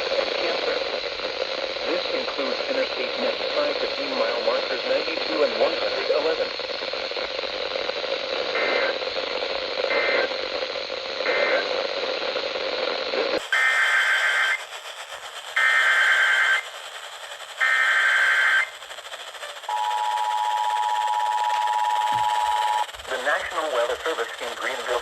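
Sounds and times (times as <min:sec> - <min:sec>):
radio hiss: 0:00.0 - 0:25.0
screeching data bursts: 0:13.4 - 0:14.7, 0:15.5 - 0:25.0
two-tone attention signal: 0:19.7 - 0:22.9.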